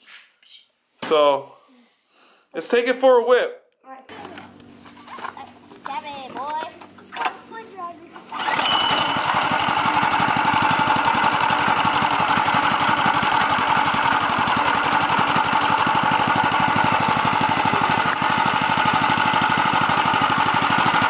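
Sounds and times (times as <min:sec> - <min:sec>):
small engine running steadily: 0:04.2 - 0:21.0.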